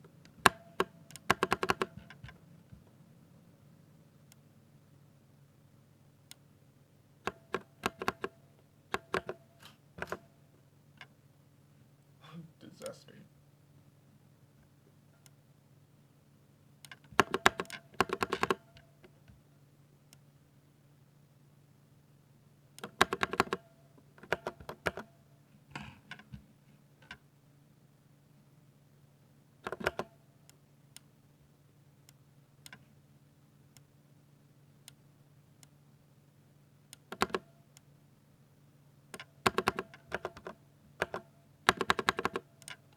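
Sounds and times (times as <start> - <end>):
faint low hum: 0.0 - 18.0
mechanical keyboard typing: 0.4 - 2.4, 7.3 - 9.4, 16.8 - 18.8, 22.8 - 25.1, 29.6 - 30.2, 37.0 - 37.5, 39.2 - 42.8.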